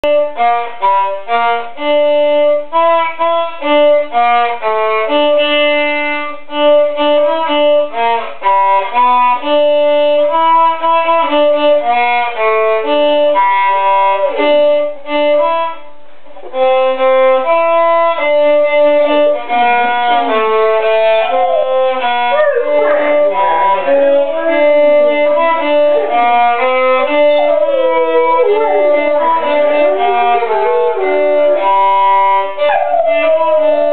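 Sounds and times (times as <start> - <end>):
violin melody: 0.0 - 33.9
dog howling: 14.0 - 14.6, 19.4 - 33.9.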